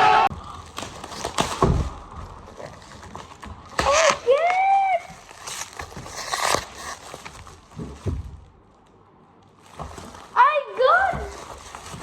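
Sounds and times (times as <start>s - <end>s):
wrapping paper crinkling and tearing: 0.3s - 8.9s, 9.5s - 12.0s
child exclamation: 10.4s - 11.3s.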